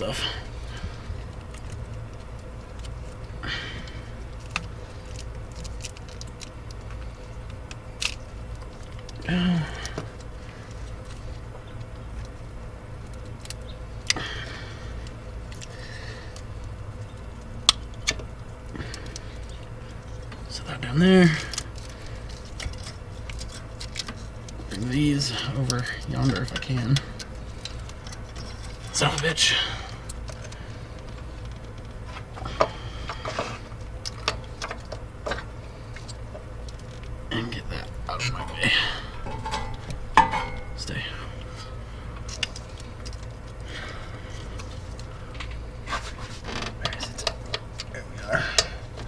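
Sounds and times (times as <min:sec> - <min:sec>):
steady low hum: 0:00.0 - 0:49.0
handling and rustling: 0:21.2 - 0:49.0.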